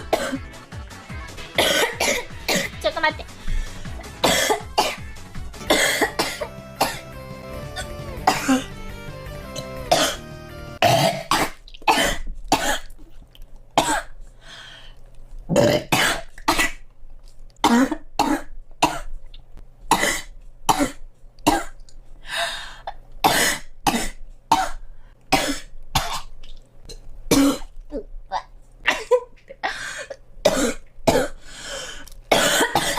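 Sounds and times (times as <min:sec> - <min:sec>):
girl coughing: 0:00.0 - 0:00.4, 0:01.6 - 0:03.1, 0:04.2 - 0:05.0, 0:05.7 - 0:07.0, 0:08.2 - 0:08.7, 0:09.9 - 0:10.2, 0:28.4 - 0:31.4, 0:32.3 - 0:32.9.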